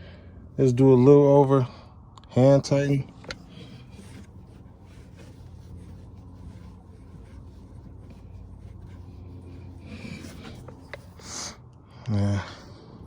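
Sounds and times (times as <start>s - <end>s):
steady low hum: 0.0s - 13.0s
hands scraping plastic cap: 3.0s - 11.6s.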